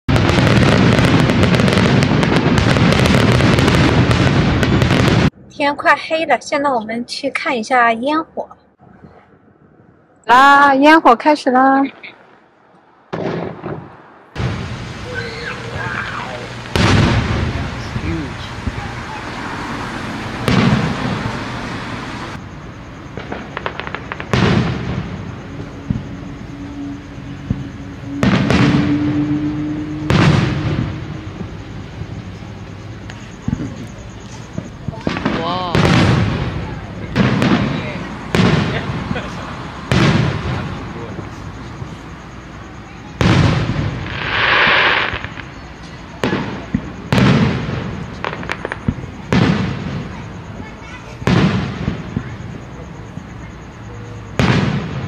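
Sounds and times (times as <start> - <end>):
firework boom: 0.1 - 5.3, 13.1 - 32.4, 33.0 - 42.0, 43.2 - 45.6, 46.2 - 50.2
firework crackles: 0.1 - 5.3, 13.1 - 55.0.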